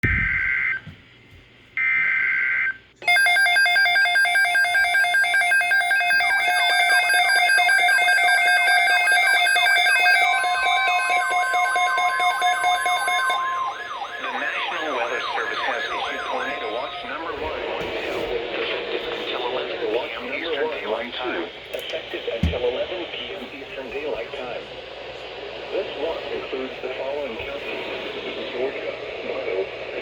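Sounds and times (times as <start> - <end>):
steady tone: 7.9 - 20.6
pulsing alert tone: 9.5 - 17.5
falling swept tones: 10.1 - 18.2.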